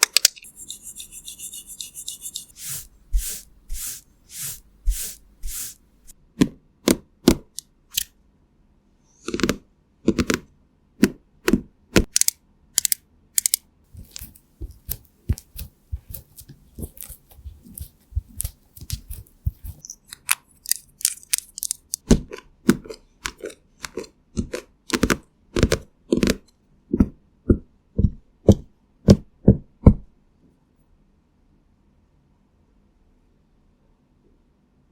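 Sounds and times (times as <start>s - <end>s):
crisp tapping and clicking: 14.0s - 26.4s.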